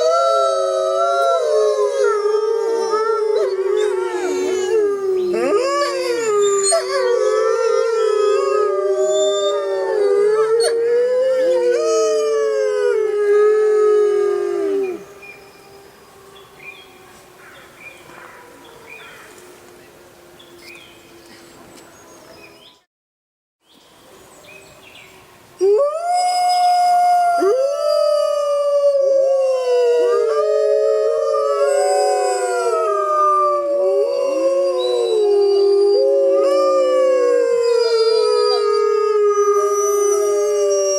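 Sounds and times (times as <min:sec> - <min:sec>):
wolves howling: 0:00.0 - 0:17.2, 0:25.6 - 0:40.9.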